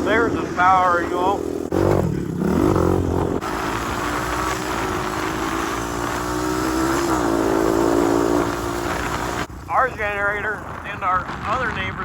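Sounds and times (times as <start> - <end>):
atv engine running: 0.0 - 11.2
wind noise on microphone: 10.3 - 12.0.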